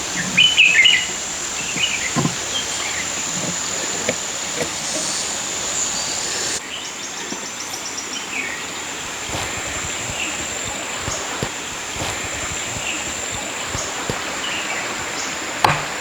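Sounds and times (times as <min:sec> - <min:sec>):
bird chirps: 0:00.0 - 0:15.5
steady rushing noise: 0:08.7 - 0:15.6
light taps: 0:09.0 - 0:15.9.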